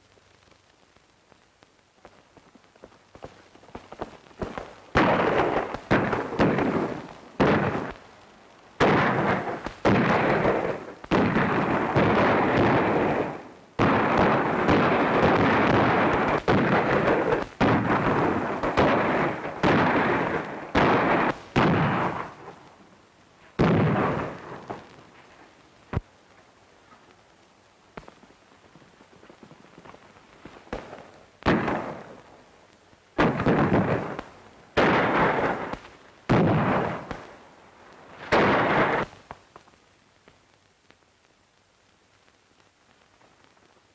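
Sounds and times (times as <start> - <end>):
echoing gunshots: 4.4 - 8.0, 8.8 - 22.6, 23.6 - 24.8, 30.7 - 32.3, 33.2 - 37.4, 38.2 - 39.2.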